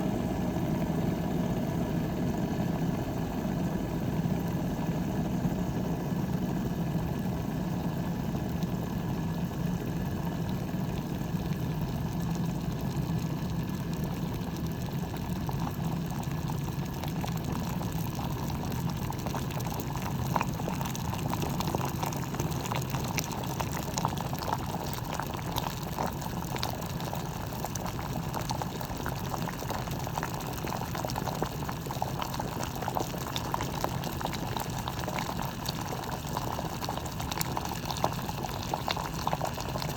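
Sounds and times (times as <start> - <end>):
electric kettle rumbling: 0.0 - 39.9
water bubbling and crackling: 8.5 - 39.9.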